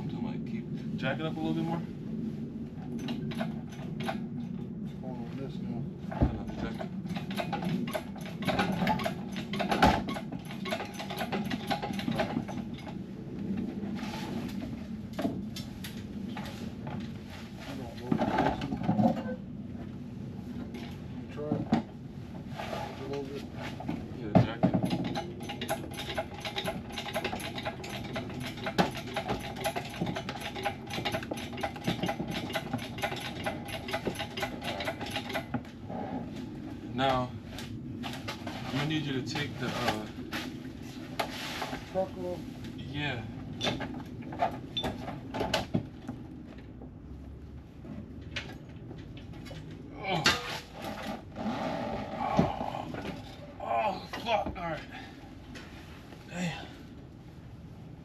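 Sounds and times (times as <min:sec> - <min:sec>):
jack clicking and clanking: 0:06.3 - 0:13.0, 0:23.9 - 0:35.7.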